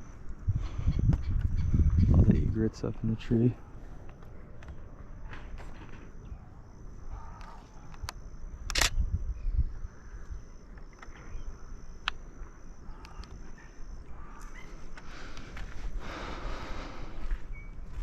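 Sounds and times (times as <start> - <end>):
camera shutter clicks: 8.0 - 9.0.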